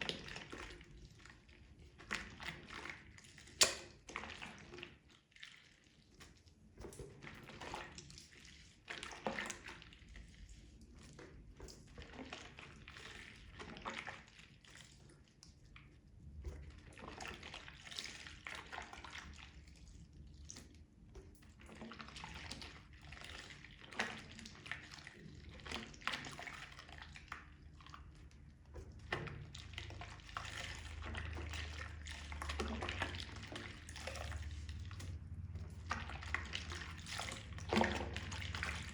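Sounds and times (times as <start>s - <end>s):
sponge squelching in water: 0.0s - 38.9s
water dripping: 3.6s - 4.1s, 26.3s - 38.9s.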